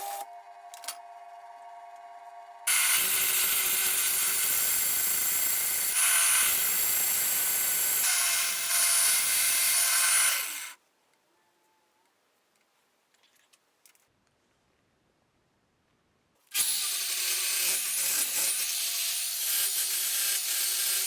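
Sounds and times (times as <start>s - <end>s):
power tool running: 2.6s - 10.8s.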